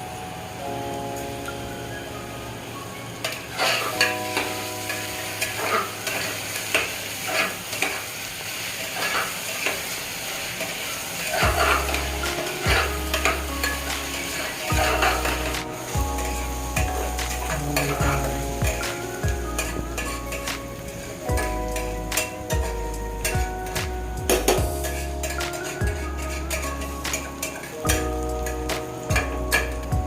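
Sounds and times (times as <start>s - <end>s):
soft background music: 0.0s - 8.7s, 11.3s - 30.0s
food sizzling in a pot: 0.8s - 30.0s
metal ladle scraping a pot: 11.3s - 15.6s, 19.6s - 20.5s, 24.4s - 28.6s.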